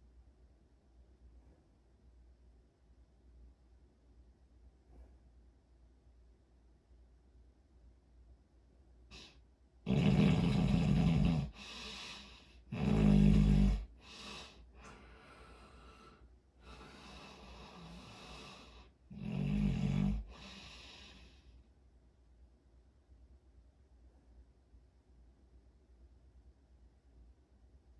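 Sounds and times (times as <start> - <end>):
person snoring: 9.9 - 21.3
soft breaths: 10.2 - 19.1, 19.9 - 21.8.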